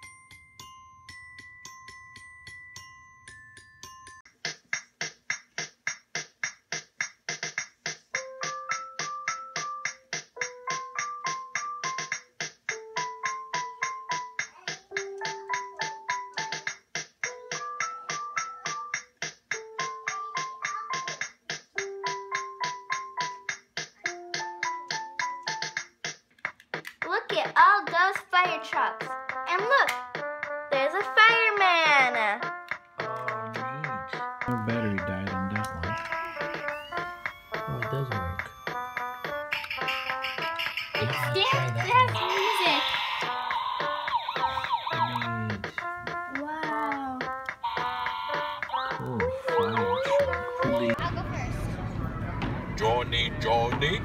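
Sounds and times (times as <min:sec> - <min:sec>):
chiming bell-like notes: 0:00.0 - 0:04.3, 0:37.2 - 0:42.4
bright keyboard tune: 0:00.0 - 0:04.4, 0:08.2 - 0:26.0, 0:28.6 - 0:43.3, 0:44.0 - 0:51.0.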